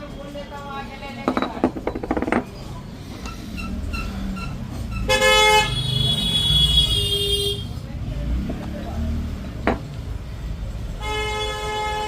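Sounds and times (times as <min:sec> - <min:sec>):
low traffic rumble: 0:00.0 - 0:12.0
vehicle horn honking: 0:05.0 - 0:07.7, 0:11.0 - 0:12.0.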